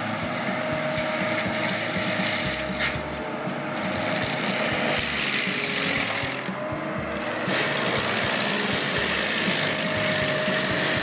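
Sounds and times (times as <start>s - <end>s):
constant machine whine: 0.0s - 11.0s
heavy machine engine: 0.0s - 11.0s.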